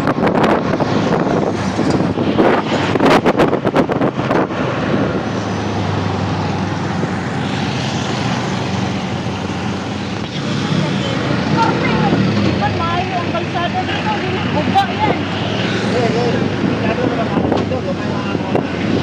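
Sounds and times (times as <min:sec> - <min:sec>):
road traffic: 0:00.0 - 0:19.0
wind buffeting microphone: 0:00.0 - 0:19.0
vehicle engine running: 0:05.8 - 0:15.3.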